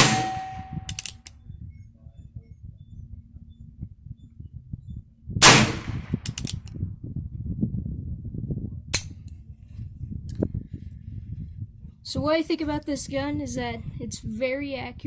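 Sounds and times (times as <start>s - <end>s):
low rumble: 0.0s - 12.0s
revolver gunshot: 5.4s - 6.2s.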